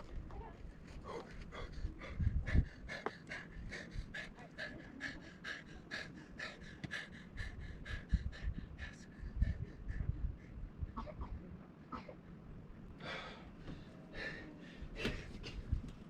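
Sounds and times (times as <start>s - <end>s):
rapid rhythmic panting: 0.9s - 11.2s.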